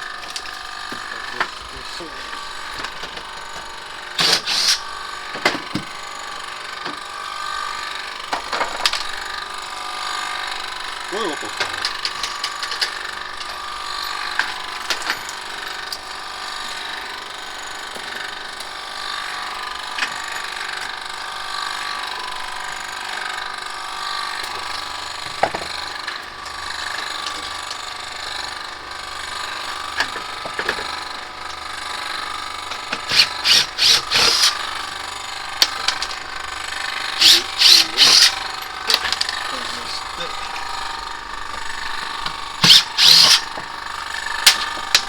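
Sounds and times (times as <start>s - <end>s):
air conditioner whirring: 1.0s - 5.2s, 11.0s - 13.4s, 32.6s - 45.0s
person talking: 11.1s - 11.8s, 38.9s - 40.5s.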